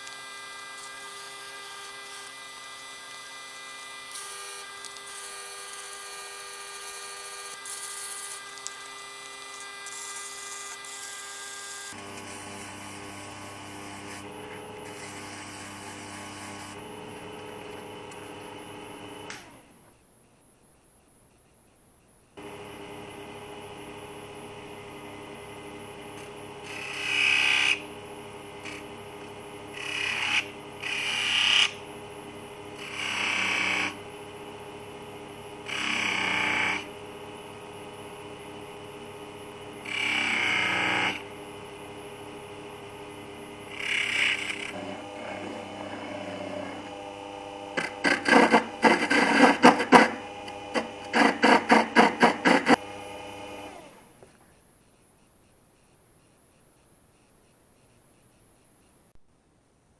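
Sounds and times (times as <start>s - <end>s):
cutting tool on spinning wood: 0.0s - 19.3s, 22.4s - 34.3s, 35.6s - 54.0s
lathe motor running: 11.9s - 19.3s, 22.4s - 54.0s.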